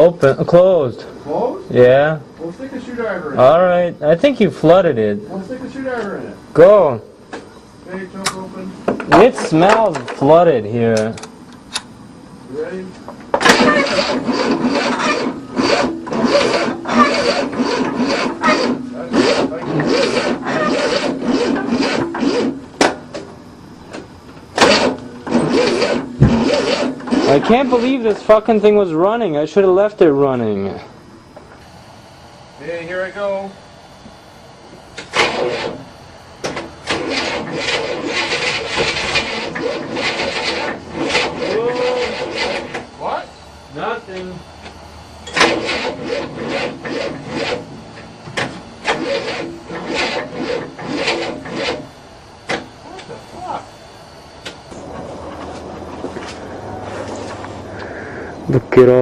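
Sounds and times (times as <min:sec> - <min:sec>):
sharp click: 0:10.9 - 0:11.9
starter motor cranking engine: 0:12.6 - 0:23.3, 0:24.5 - 0:28.9, 0:35.0 - 0:43.2, 0:45.2 - 0:53.6, 0:54.4 - 0:59.0
car engine running unevenly: 0:54.7 - 0:58.8.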